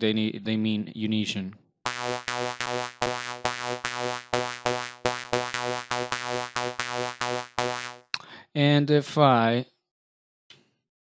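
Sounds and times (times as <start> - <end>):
synth lead repeating a note: 1.9 - 8.1.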